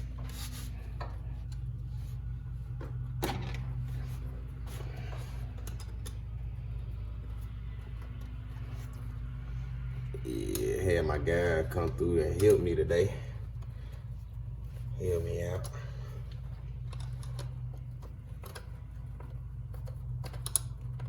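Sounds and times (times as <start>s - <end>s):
light clicks and knocks of hand work: 0.0s - 6.7s, 15.6s - 21.0s
steady low hum: 0.0s - 21.0s.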